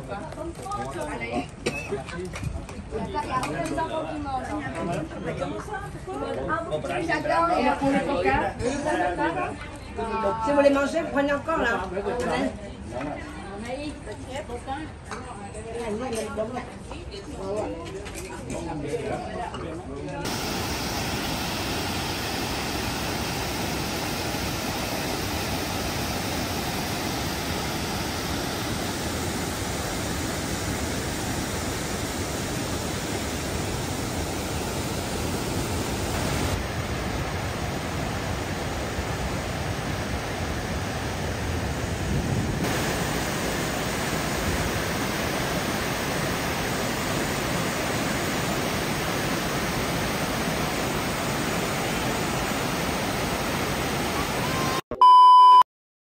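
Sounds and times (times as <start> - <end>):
waterfall rushing: 20.2 - 54.8.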